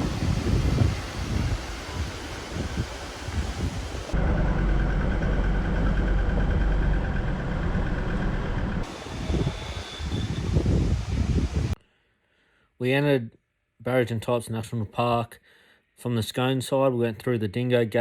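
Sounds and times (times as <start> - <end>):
wind buffeting microphone: 0.0 - 4.2, 8.6 - 11.8
vehicle engine and road noise: 0.0 - 11.7.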